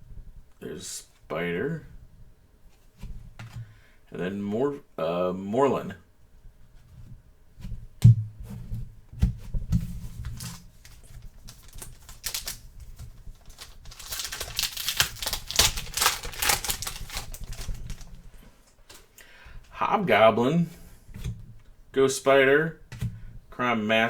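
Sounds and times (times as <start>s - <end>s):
cards clicking and flicking: 10.3s - 18.1s.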